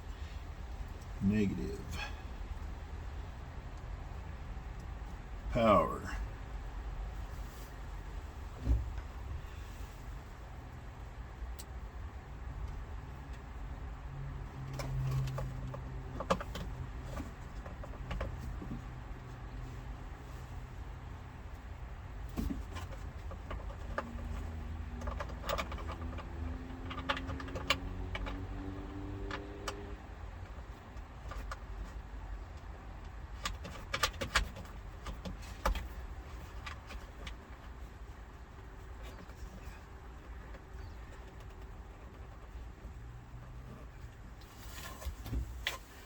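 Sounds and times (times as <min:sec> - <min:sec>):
low steady rumble: 0:00.0 - 0:33.5.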